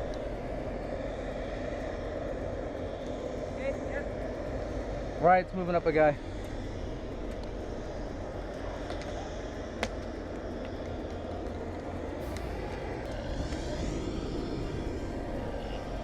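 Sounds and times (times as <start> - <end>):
low outdoor rumble: 0.0 - 16.0
faint ticks: 8.4 - 12.0.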